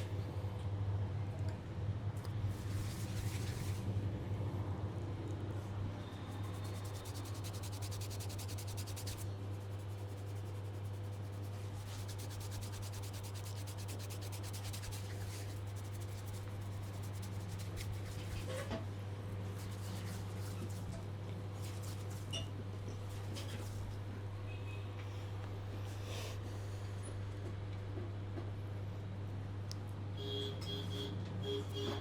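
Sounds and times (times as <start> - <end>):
steady low hum: 0.0 - 20.1
hands rubbing hair: 2.6 - 3.8, 6.3 - 18.6.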